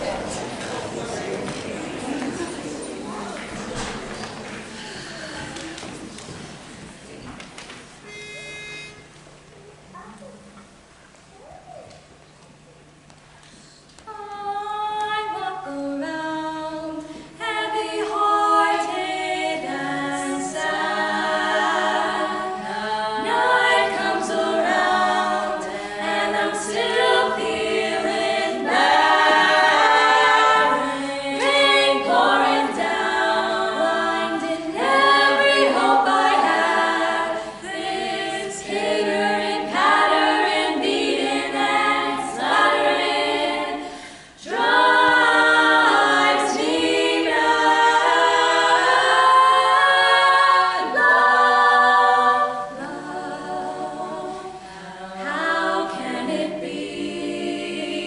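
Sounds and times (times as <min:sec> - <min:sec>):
choir singing a cappella: 0:14.1 - 0:58.0.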